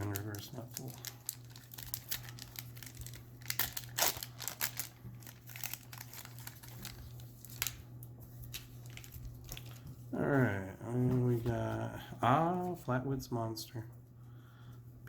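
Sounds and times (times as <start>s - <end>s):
card packaging crinkling: 0.0s - 9.9s.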